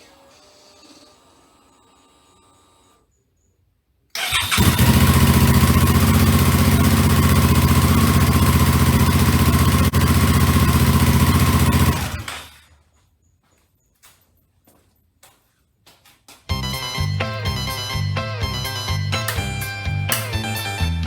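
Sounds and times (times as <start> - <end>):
motorcycle engine idling: 4.2 - 12.7.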